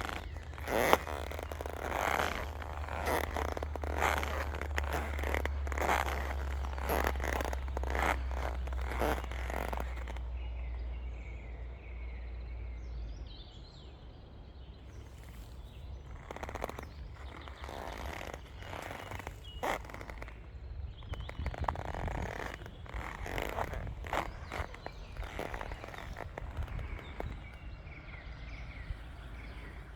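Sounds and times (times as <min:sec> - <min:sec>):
rubber boots squeaking footsteps: 0:00.0 - 0:10.2, 0:15.0 - 0:27.6
small birds chirping: 0:00.0 - 0:13.9, 0:14.5 - 0:29.9.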